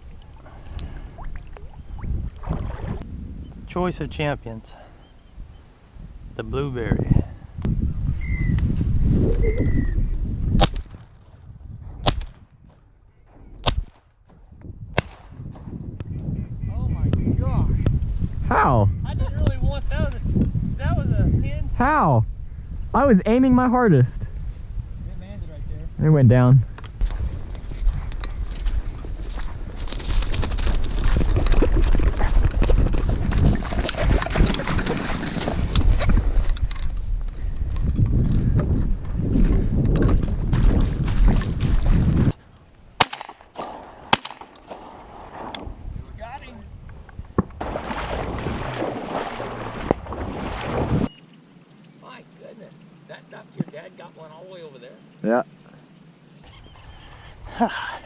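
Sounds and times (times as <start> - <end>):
sloshing splashes of wading: 0.0 - 3.0, 47.6 - 51.1
wind buffeting microphone: 0.0 - 4.6, 5.3 - 42.4, 44.7 - 51.1
shotgun shots: 12.0 - 12.4, 15.0 - 15.4, 43.0 - 45.6.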